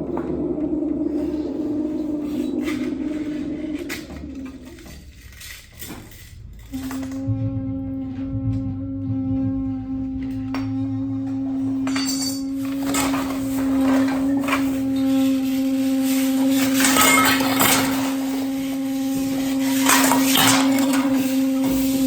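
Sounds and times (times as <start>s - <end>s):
metal percussion scraping and clattering: 2.0s - 22.0s
steady held tone: 6.7s - 17.4s.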